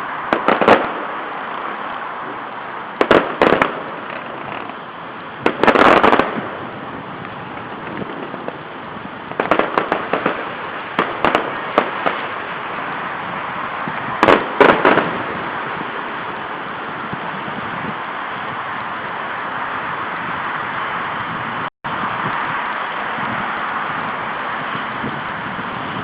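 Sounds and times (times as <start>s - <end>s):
fireworks banging and popping: 0.0s - 18.0s
steady background noise: 0.0s - 26.0s
crackling pops: 0.3s - 1.7s, 3.0s - 4.8s, 5.4s - 6.5s, 7.2s - 8.7s, 9.3s - 12.4s.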